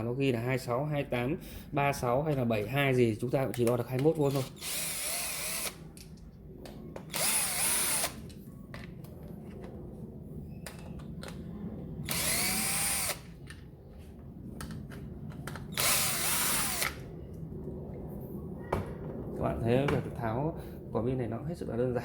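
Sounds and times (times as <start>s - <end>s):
drill-driver motor whine: 4.3s - 5.8s, 7.1s - 8.2s, 12.0s - 13.4s, 15.7s - 17.1s.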